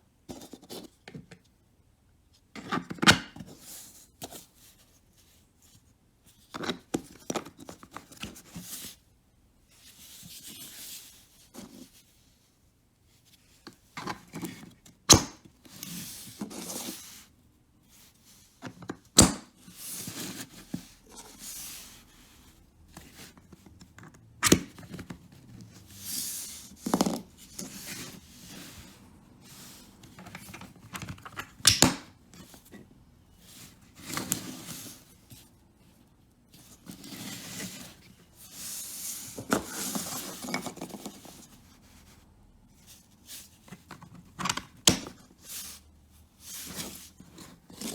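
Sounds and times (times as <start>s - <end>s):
plastic parts rustling and scraping: 15.7s - 47.9s.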